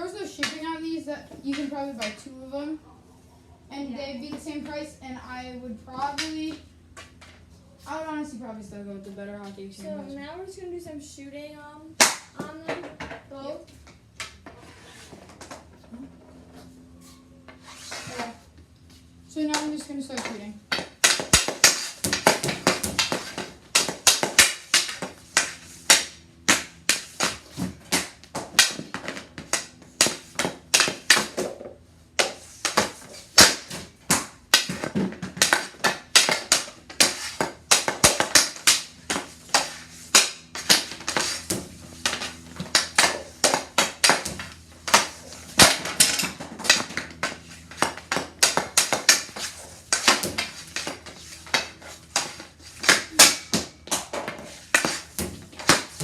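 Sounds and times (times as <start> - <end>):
hockey stick hitting puck: 0.2 - 0.8, 1.4 - 2.3, 6.0 - 6.6, 12.0 - 13.2, 19.5 - 56.0
pucks rebounding off passer: 19.5 - 56.0.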